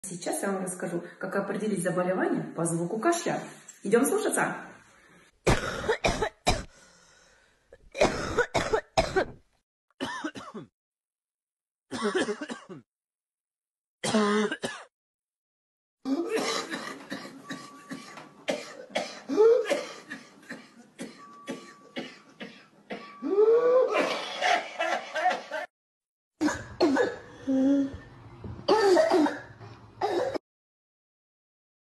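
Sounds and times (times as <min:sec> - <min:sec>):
person coughing: 0:05.5 - 0:06.7, 0:08.0 - 0:09.4, 0:10.0 - 0:10.7, 0:11.9 - 0:12.8, 0:14.0 - 0:14.9, 0:16.1 - 0:24.9, 0:26.4 - 0:27.2, 0:28.7 - 0:30.4.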